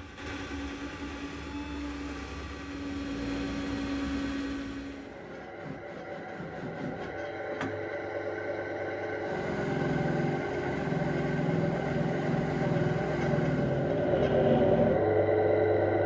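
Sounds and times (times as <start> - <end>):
small motor running: 0.0 - 5.3, 9.2 - 15.0
deep pulsing note: 0.0 - 16.0.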